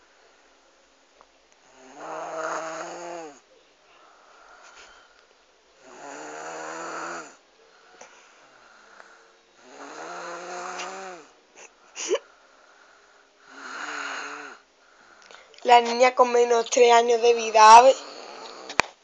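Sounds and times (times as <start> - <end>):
child snoring: 1.7 - 3.4, 5.8 - 7.4, 8.5 - 11.4, 13.4 - 15.2, 16.9 - 18.9.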